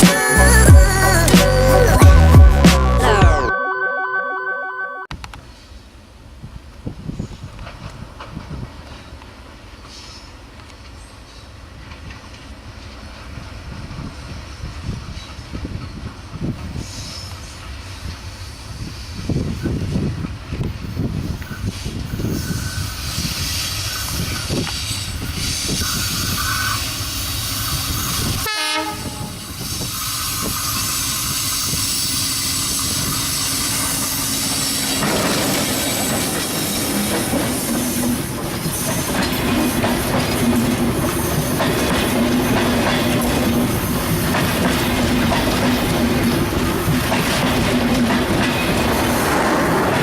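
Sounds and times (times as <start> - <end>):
passenger train passing: 0.0 - 3.2, 5.3 - 50.0
train wheels clattering: 29.6 - 50.0.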